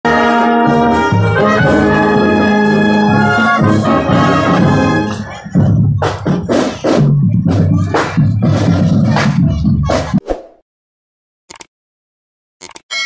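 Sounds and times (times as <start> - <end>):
brass section playing chords: 0.1 - 5.3.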